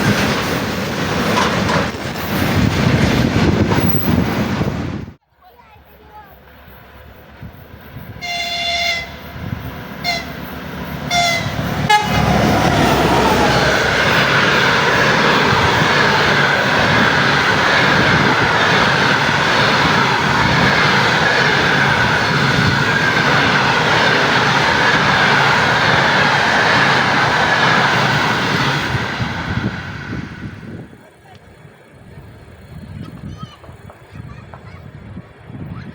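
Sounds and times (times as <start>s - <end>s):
train wheels rumbling on rail: 0.0s - 35.9s
train horn blasts: 8.1s - 9.4s, 10.0s - 14.0s.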